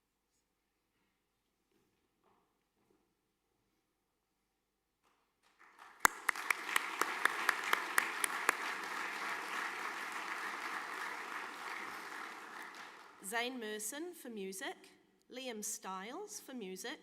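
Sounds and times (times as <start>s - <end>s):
loud close claps: 5.0s - 13.3s
audience applauding: 5.4s - 13.4s.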